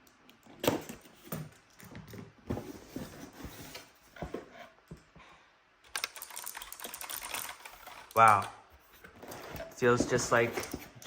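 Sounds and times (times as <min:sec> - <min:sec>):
cardboard and plastic packaging handled: 0:00.5 - 0:04.8, 0:06.8 - 0:11.0.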